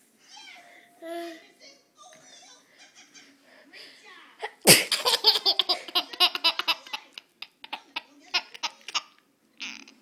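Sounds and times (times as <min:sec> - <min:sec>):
baby laughing: 0:04.9 - 0:10.0.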